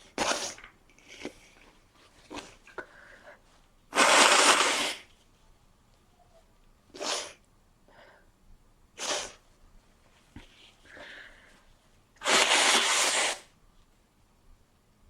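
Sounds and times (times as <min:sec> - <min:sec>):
person sneezing: 0:07.0 - 0:07.4, 0:09.0 - 0:09.4.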